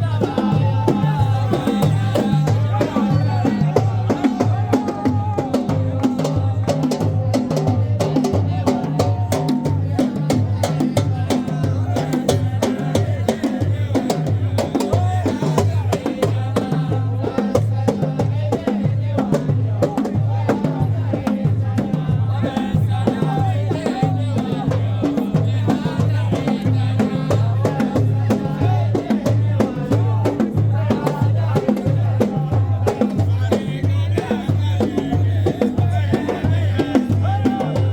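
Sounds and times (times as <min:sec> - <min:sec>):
low drum beat: 0:00.0 - 0:37.9.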